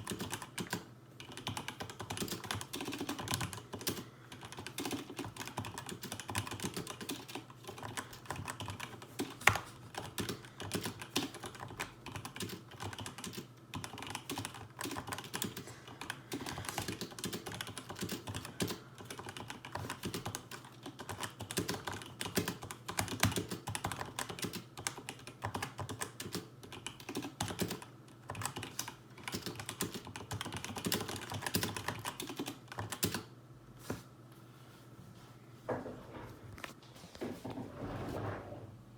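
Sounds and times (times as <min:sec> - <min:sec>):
fast typing on mechanical keyboard: 0:00.0 - 0:33.3.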